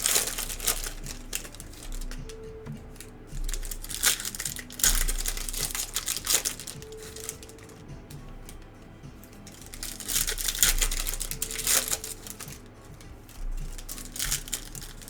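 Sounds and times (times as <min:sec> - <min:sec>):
faint background music: 0:00.0 - 0:15.0
foil wrappers crinkling: 0:00.0 - 0:15.0.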